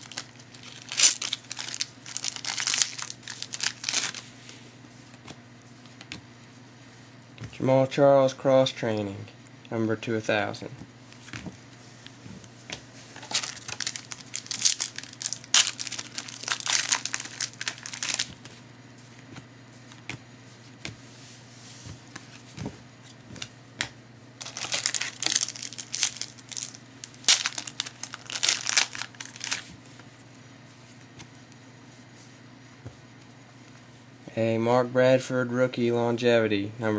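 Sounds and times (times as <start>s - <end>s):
card pack wrappers crinkling: 0.0s - 4.3s, 13.2s - 18.4s, 24.4s - 29.7s.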